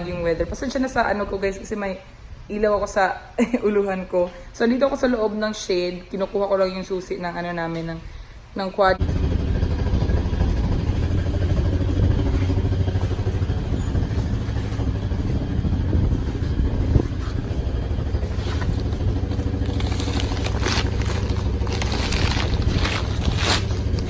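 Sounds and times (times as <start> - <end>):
quad bike engine idling: 9.0 - 24.0.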